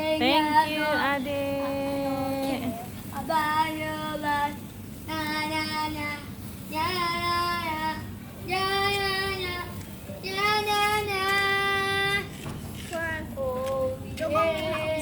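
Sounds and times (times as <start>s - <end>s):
child singing long notes: 13.3s - 15.0s.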